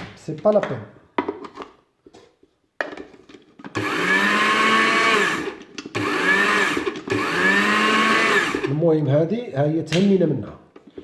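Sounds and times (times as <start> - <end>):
small electric motor whining: 3.8 - 8.7.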